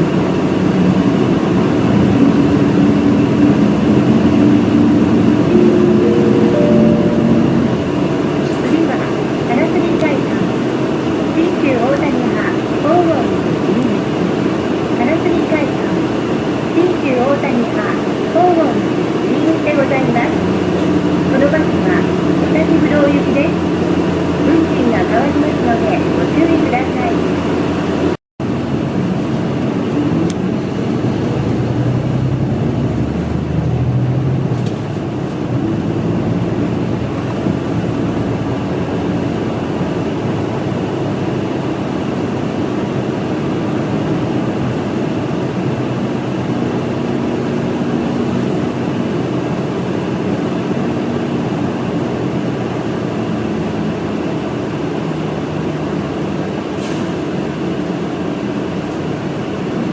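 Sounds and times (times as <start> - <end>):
bus engine rumble: 0.0 - 59.9
road noise: 0.0 - 59.9.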